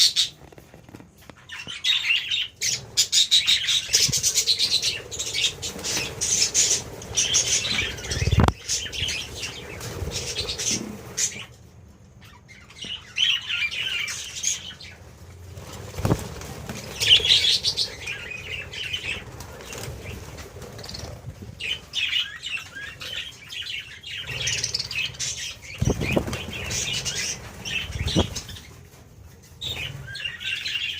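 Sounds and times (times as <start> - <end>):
budgerigars chirping and chattering: 0.0 - 0.5, 1.3 - 11.6, 12.2 - 15.2, 16.0 - 28.8, 29.6 - 30.9
wings flapping: 0.0 - 1.8, 2.7 - 11.5, 14.8 - 23.2, 24.2 - 30.3.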